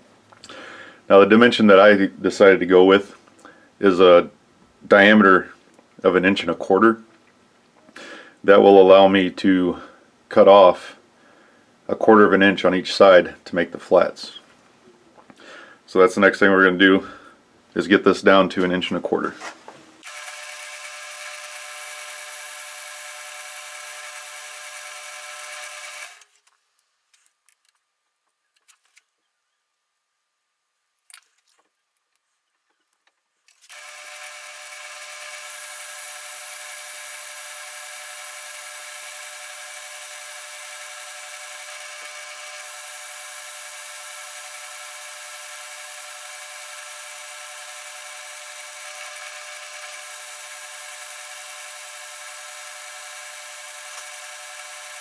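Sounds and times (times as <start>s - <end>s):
lathe whining: 20.0s - 26.3s, 33.7s - 55.0s.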